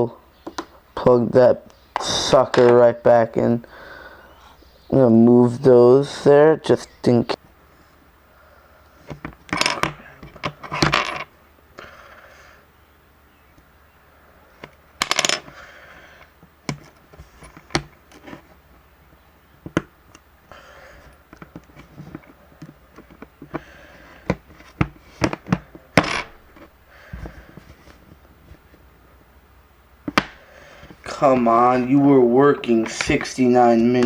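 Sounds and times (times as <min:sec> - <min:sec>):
handling rustles: 0:16.7 - 0:18.7, 0:21.0 - 0:28.9.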